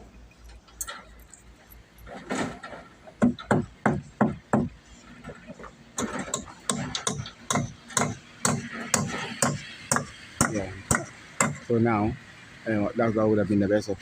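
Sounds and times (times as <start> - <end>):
hammer striking timber: 3.2 - 5.4, 6.0 - 11.7.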